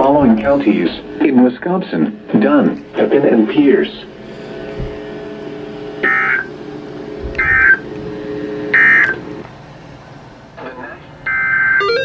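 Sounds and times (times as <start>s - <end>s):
digital modem screech bursts: 6.0s - 6.5s, 7.4s - 7.9s, 8.8s - 9.2s.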